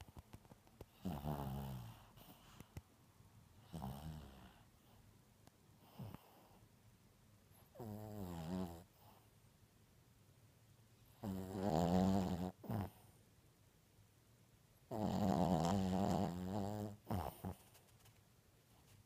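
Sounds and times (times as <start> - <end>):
puppy snoring: 0.8 - 2.8, 3.6 - 5.0, 5.8 - 6.6, 7.5 - 9.3, 11.1 - 13.2, 14.9 - 17.8
puppy snorting: 14.9 - 17.8.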